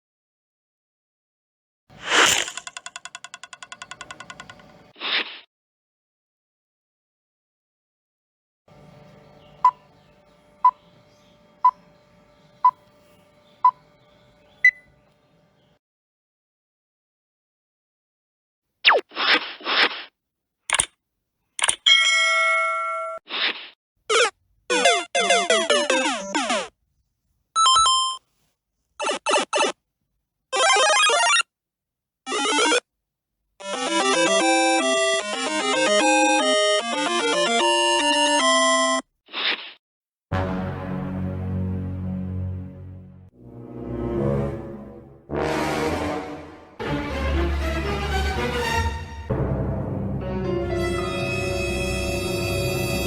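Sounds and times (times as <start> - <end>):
faint steady hum: 8.7 - 15.8
music: 8.7 - 15.8, 33.6 - 39.0, 40.3 - 53.0
electronic countdown beeps: 14.6 - 14.9.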